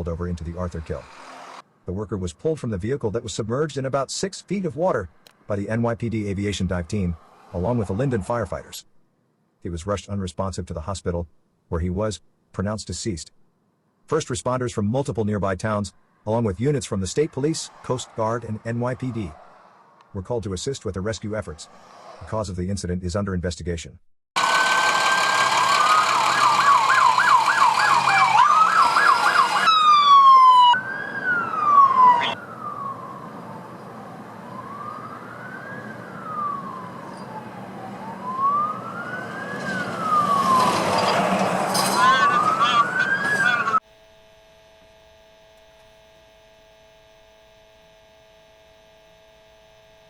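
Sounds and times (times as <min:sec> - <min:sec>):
sirens wailing and yelping: 0:06.8 - 0:08.4, 0:16.6 - 0:20.2, 0:24.4 - 0:43.8.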